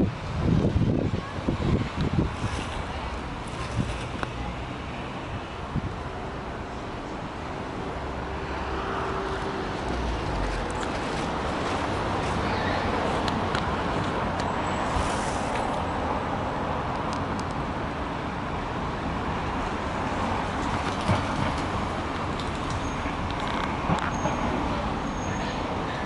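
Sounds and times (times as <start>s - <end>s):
distant road traffic: 0.0s - 26.0s.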